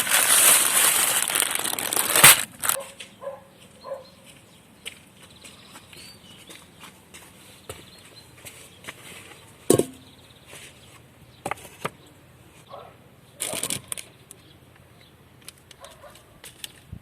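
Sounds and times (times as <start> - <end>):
rustling: 0.0 - 2.9.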